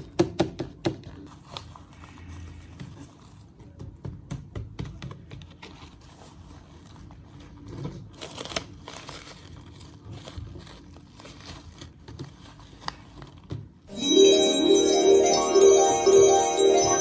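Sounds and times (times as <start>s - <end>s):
slime crinkling and crackling: 8.0s - 13.1s.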